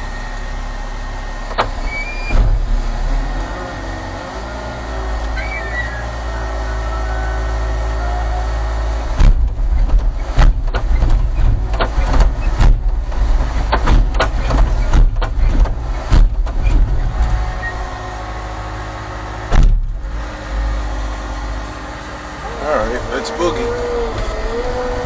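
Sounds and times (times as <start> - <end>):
diesel engine idling: 0.0 - 25.0
loud irregular knocks and clatters: 9.2 - 17.6, 19.5 - 20.2.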